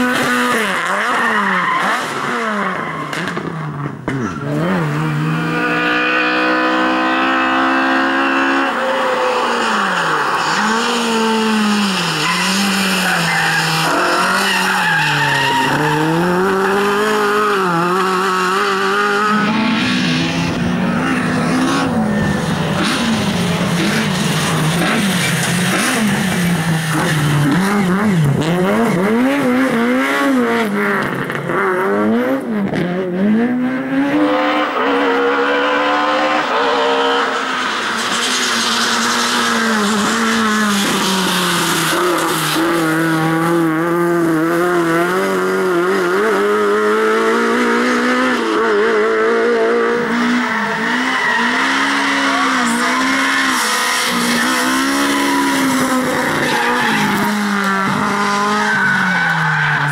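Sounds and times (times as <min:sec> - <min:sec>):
rally car engine revving hard: 0:00.0 - 0:59.9
tyres skidding: 0:00.0 - 0:59.9.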